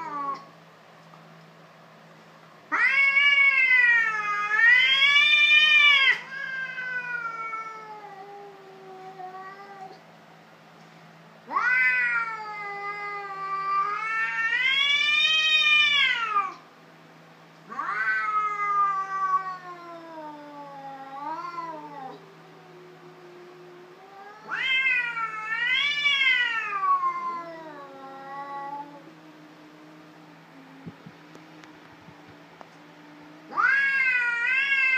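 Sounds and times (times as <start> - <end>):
cat low drawn-out moan: 0.0 - 0.5, 17.7 - 31.2
cats yowling: 0.0 - 0.5, 2.7 - 10.0, 11.4 - 16.7, 17.6 - 31.0, 33.3 - 34.9.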